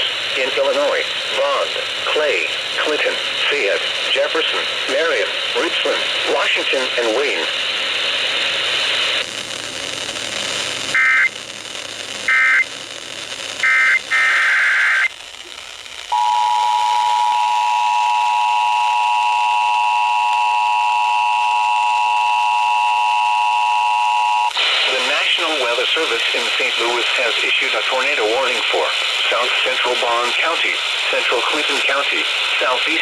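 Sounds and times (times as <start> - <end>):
radio audio: 0.0 - 9.2, 11.0 - 11.4, 12.2 - 12.7, 13.5 - 33.0
two-tone attention signal: 16.2 - 24.5.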